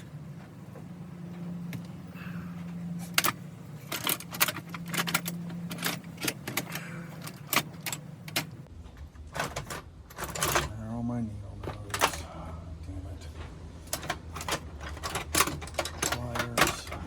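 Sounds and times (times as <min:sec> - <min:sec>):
low steady hum: 0:00.0 - 0:17.0
metal parts and tools clinking: 0:03.0 - 0:10.8, 0:11.6 - 0:12.4, 0:13.8 - 0:17.0.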